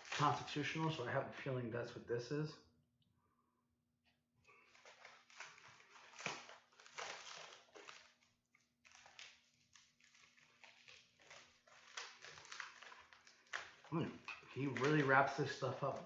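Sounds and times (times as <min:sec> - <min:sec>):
wrapper crinkling: 0:00.0 - 0:00.5, 0:04.6 - 0:16.0.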